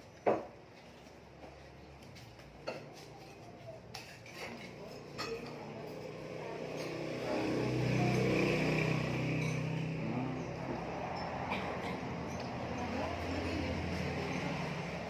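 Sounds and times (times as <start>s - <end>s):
spoon clinking against bowl: 3.9s - 5.7s
passing vehicle engine: 4.6s - 15.0s.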